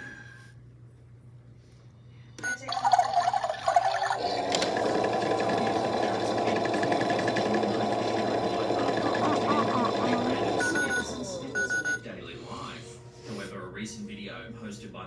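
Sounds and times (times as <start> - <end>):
water filling: 2.6 - 11.6
motor whirring: 4.0 - 11.9.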